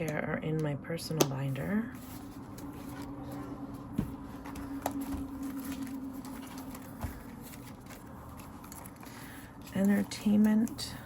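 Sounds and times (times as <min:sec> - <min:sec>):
low hum: 0:01.5 - 0:10.2.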